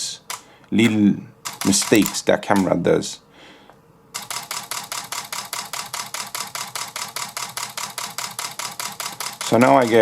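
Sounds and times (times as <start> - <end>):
camera shutter clicking in burst: 1.4 - 2.7, 4.2 - 10.0.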